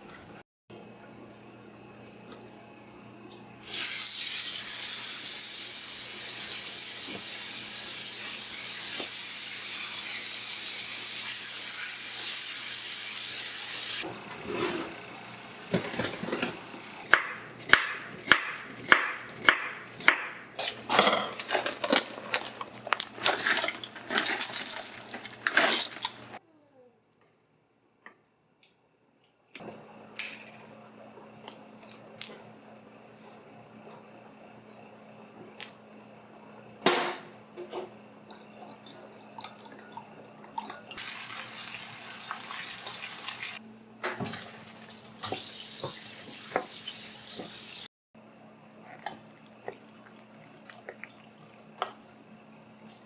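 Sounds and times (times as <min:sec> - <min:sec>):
kitchen tap running: 0:40.6 - 0:43.6, 0:44.2 - 0:47.9.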